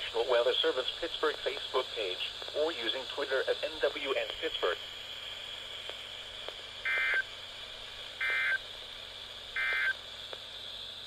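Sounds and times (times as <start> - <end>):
radio hiss: 0.0 - 11.0.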